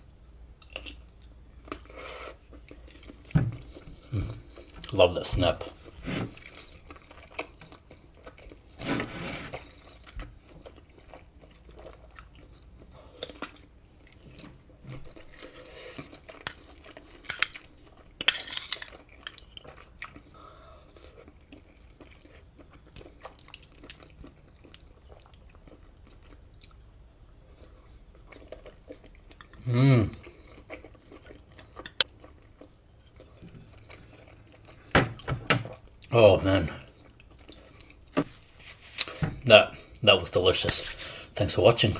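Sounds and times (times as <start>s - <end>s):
chewing and biting food: 5.8s - 8.8s, 9.5s - 36.1s.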